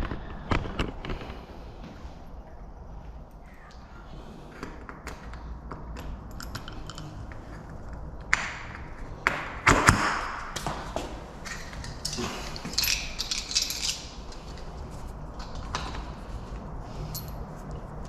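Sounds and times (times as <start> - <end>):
metallic clicks and rattles: 5.1 - 8.9, 11.4 - 14.8.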